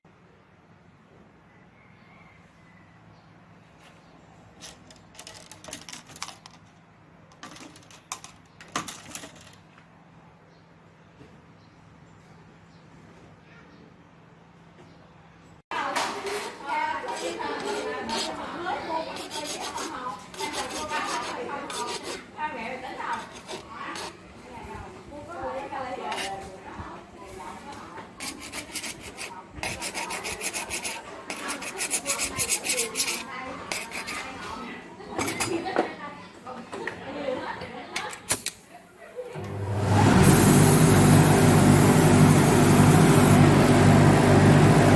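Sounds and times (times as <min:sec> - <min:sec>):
hand sanding strokes: 0:17.0 - 0:18.4, 0:19.0 - 0:22.3, 0:23.1 - 0:24.2, 0:28.2 - 0:34.4.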